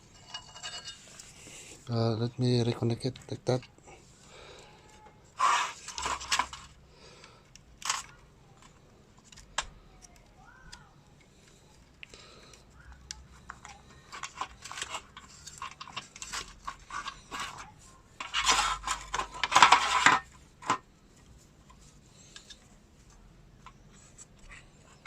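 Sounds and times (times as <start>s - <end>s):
wiring connectors clicking and rattling: 11.4s - 20.8s.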